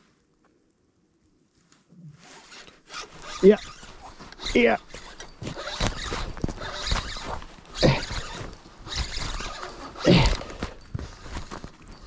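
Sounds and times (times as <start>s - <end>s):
spinning reel cranking: 2.5s - 12.0s.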